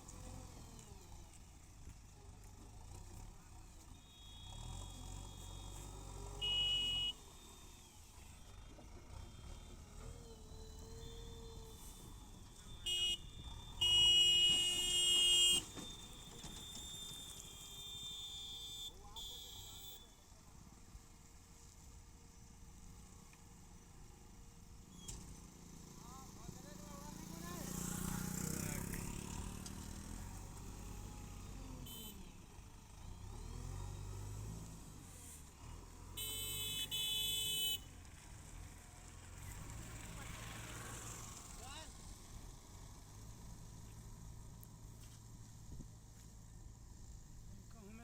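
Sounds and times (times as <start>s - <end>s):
diesel engine rumbling: 0.0s - 48.0s
vehicle horn: 6.3s - 7.2s, 12.6s - 15.8s, 17.4s - 20.2s, 31.8s - 32.6s, 36.2s - 37.9s.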